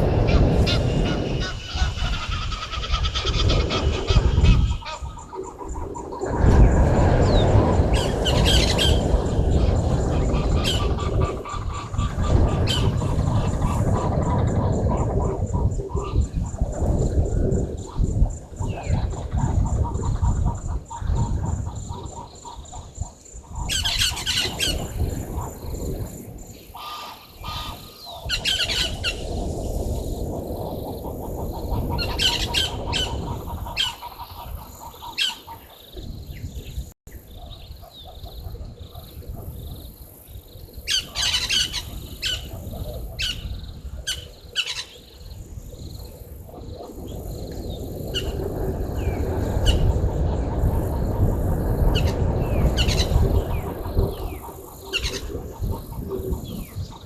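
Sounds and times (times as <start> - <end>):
birds squawking: 0.0 - 5.8, 7.2 - 15.1, 26.7 - 29.3, 31.6 - 36.0, 40.9 - 42.5.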